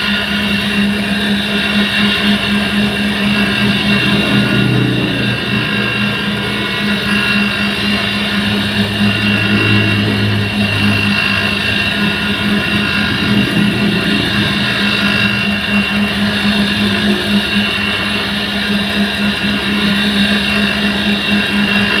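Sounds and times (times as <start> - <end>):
high whine: 0.0 - 22.0
machine motor hum: 1.2 - 17.2.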